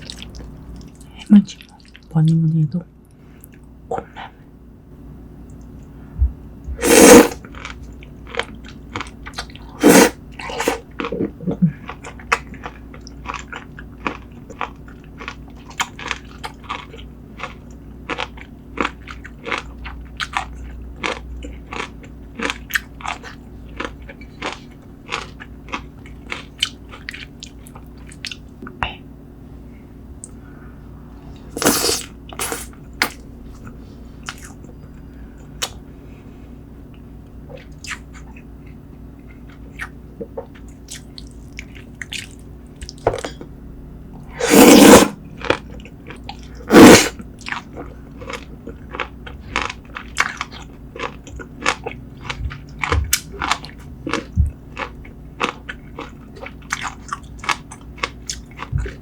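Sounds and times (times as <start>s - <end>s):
wet chewing and crunching: 0.0s - 2.1s, 7.3s - 28.5s, 36.9s - 43.5s, 44.2s - 59.0s
slurping: 6.8s - 7.4s, 9.7s - 11.3s, 31.5s - 32.7s, 44.3s - 45.2s, 46.6s - 47.2s.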